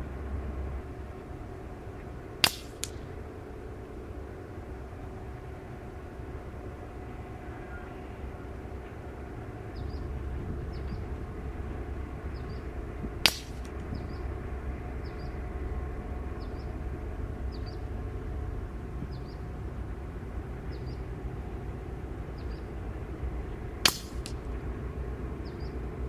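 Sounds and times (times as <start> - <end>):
air rifle shots: 2.4 - 3.2, 13.2 - 13.8, 23.8 - 24.5.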